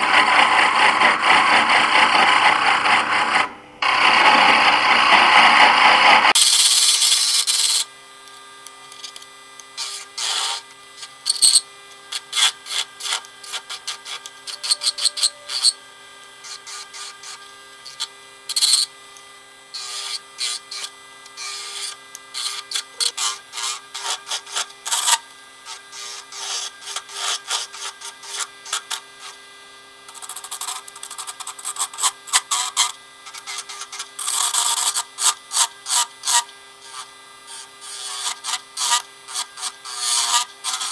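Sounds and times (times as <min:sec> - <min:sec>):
lathe motor humming: 0:00.0 - 0:07.8, 0:09.6 - 0:18.8
turning tool scraping wood: 0:00.0 - 0:07.9, 0:09.8 - 0:15.8, 0:16.4 - 0:18.9, 0:19.8 - 0:29.4, 0:30.1 - 0:40.9.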